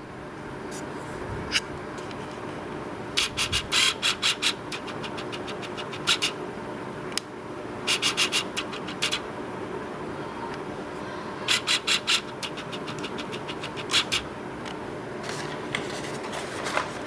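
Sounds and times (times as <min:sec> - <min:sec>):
packaging crinkling and clicking: 0:15.3 - 0:17.0.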